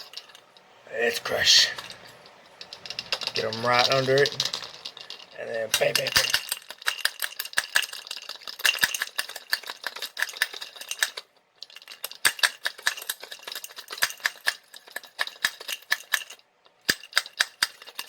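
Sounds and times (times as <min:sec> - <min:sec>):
chopper crushing hard candies: 0:01.2 - 0:18.0.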